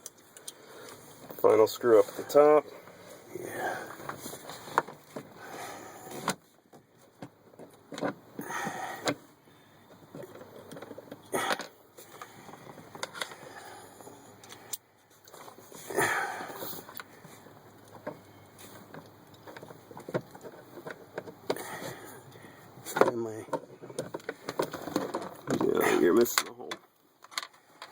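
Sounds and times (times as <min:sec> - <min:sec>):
rustling: 0:00.2 - 0:08.9.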